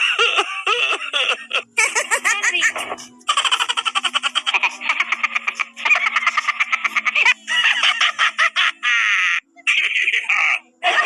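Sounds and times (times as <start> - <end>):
high-pitched giggle-like chattering: 1.8 - 8.0.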